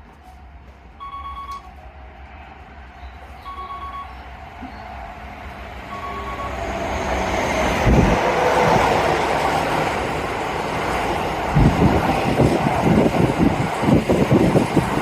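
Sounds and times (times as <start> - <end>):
electric train approaching: 0.3 - 15.0
short electronic beeps: 1.0 - 1.7, 3.5 - 4.2, 5.9 - 6.6.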